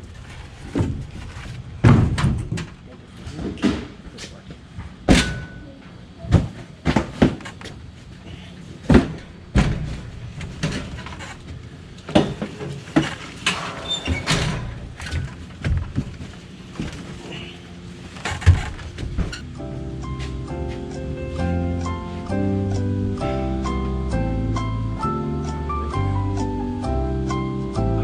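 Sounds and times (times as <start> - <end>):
heavy junk knocking and clanking: 0.6 - 4.0, 5.0 - 5.6, 8.8 - 19.4.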